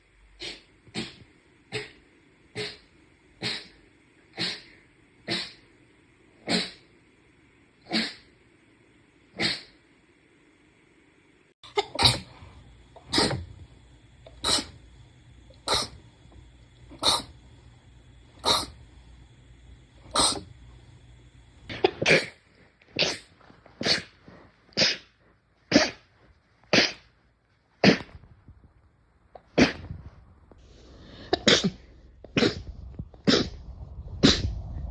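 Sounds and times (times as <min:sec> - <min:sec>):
short sharp sneezes: 0:24.8 - 0:25.1.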